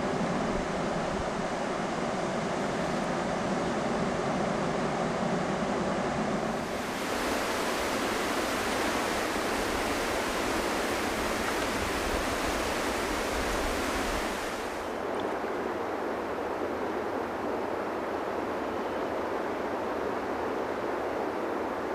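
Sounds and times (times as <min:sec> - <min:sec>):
river rapids rushing: 0:06.6 - 0:15.0.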